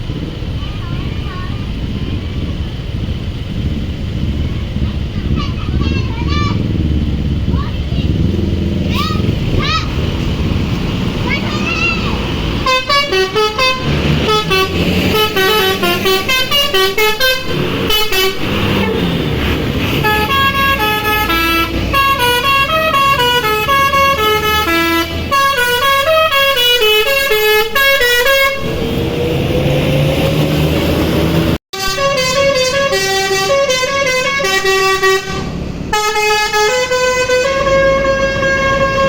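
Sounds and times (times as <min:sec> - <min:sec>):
bus engine rumble: 0:00.0 - 0:39.0
multi-tone musical bus horn: 0:11.5 - 0:29.0, 0:31.8 - 0:39.0.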